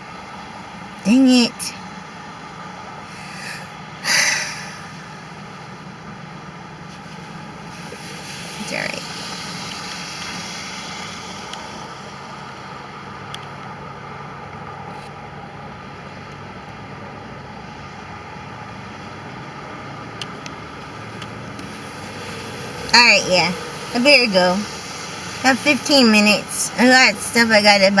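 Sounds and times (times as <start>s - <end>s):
low engine hum: 0.0s - 28.0s
even hiss: 3.1s - 5.3s, 7.6s - 12.6s.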